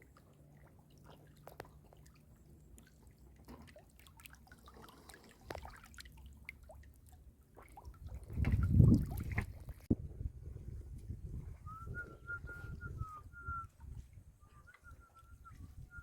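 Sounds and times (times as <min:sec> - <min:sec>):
muddy water splashing: 0:00.0 - 0:10.0
thin wavering whistle-like tone: 0:11.6 - 0:16.0.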